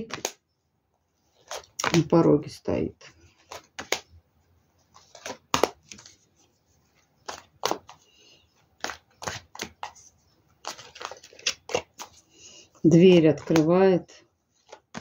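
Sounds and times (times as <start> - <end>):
cards snapping on a table: 0.0 - 0.4, 3.4 - 4.1, 5.1 - 6.0.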